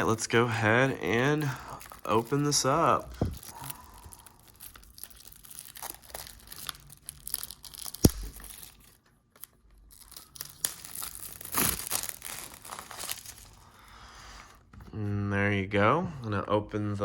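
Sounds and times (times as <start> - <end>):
plastic wrap crinkling: 0.8 - 13.8.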